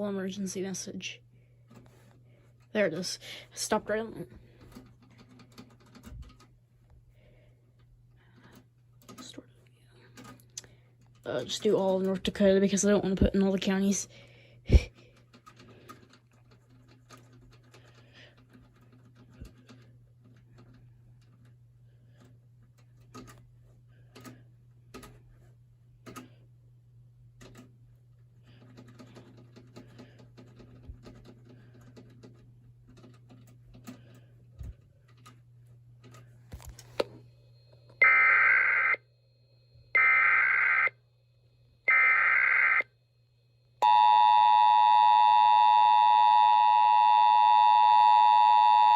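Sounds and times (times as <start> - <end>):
low steady hum: 0.0 - 48.9
screeching digital data tones: 38.0 - 39.0.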